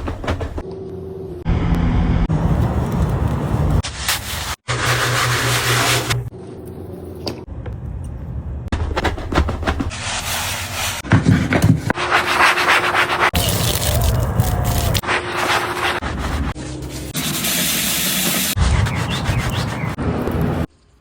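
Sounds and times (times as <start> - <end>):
scrubbing and rubbing surfaces: 0.0 - 0.6, 2.4 - 6.3, 8.8 - 20.7.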